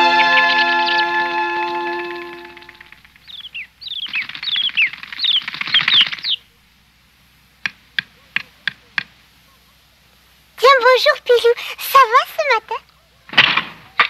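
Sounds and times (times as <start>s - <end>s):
bird chirping: 0.0s - 6.6s
wing flutter: 2.0s - 6.4s
sharp taps: 7.6s - 9.2s.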